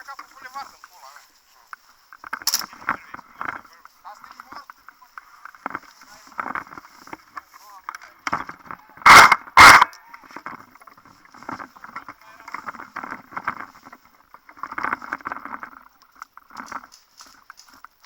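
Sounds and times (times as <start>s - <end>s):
faint scuffing and rustling: 0.0s - 8.7s, 16.6s - 18.0s.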